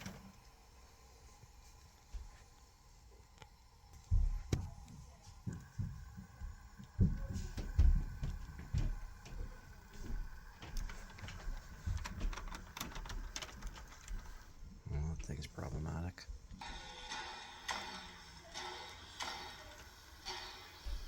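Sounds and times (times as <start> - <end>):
model train running on track: 0.0 - 4.2, 5.1 - 21.0
faint motor whine: 0.0 - 21.0
sharp clicks: 10.5 - 14.5.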